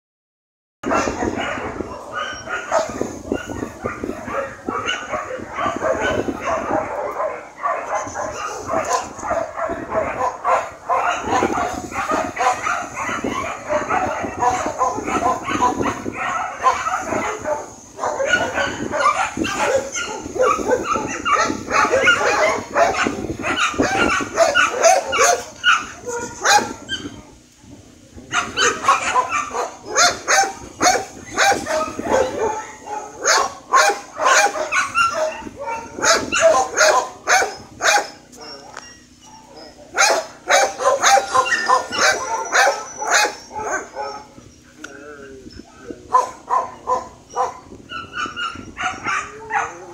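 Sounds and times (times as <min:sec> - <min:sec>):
dog barking and yipping: 0:00.8 - 0:27.2, 0:28.3 - 0:44.6, 0:46.1 - 0:49.9
dog whining: 0:00.9 - 0:06.6, 0:11.1 - 0:27.3, 0:34.2 - 0:49.9.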